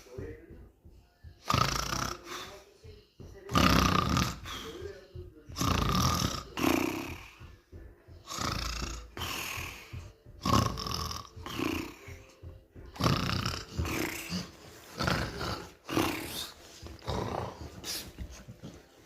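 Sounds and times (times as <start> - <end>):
person fake-snoring: 1.4 - 2.6, 3.5 - 4.8, 5.6 - 7.5, 8.2 - 17.9.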